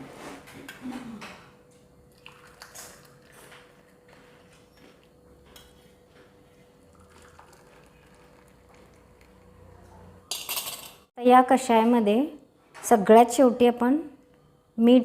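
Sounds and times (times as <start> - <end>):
kitchen utensils clinking and scraping: 10.3 - 11.1.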